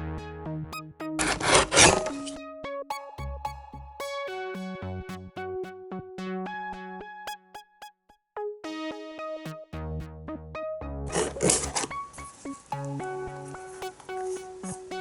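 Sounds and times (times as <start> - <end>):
bass line: 0.0 - 2.1, 3.2 - 4.0, 4.6 - 6.1, 9.6 - 13.4
synthesizer and electric piano melody: 0.0 - 15.0.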